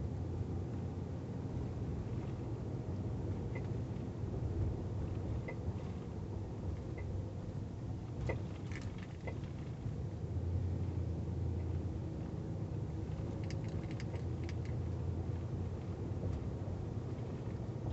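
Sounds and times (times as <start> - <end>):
low road rumble: 0.0 - 17.9.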